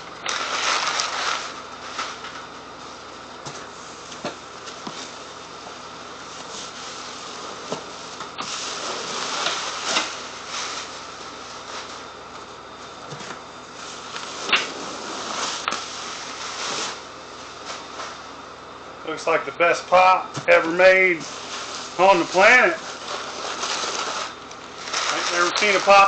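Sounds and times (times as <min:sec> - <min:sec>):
cardboard and packing rustling: 0:00.3 - 0:02.5, 0:21.2 - 0:26.0
steady background hiss: 0:13.8 - 0:26.0.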